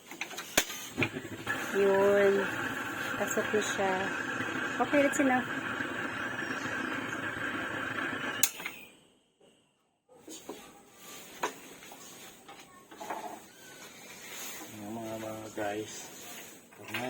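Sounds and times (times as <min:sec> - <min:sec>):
gas stove burner hissing: 0:00.6 - 0:08.7.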